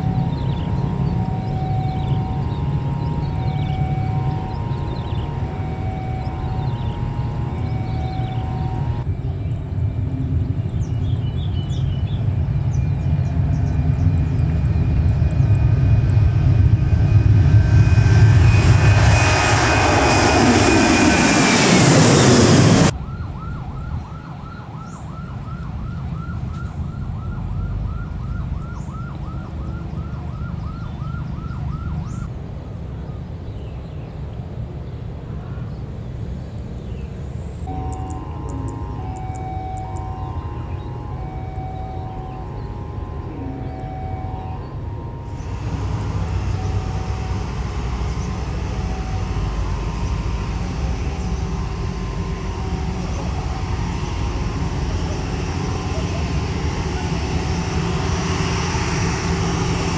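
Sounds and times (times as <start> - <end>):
jet airliner roaring past: 0.0 - 32.3, 37.5 - 59.9
high repeating chirp: 15.5 - 22.9, 37.7 - 54.2.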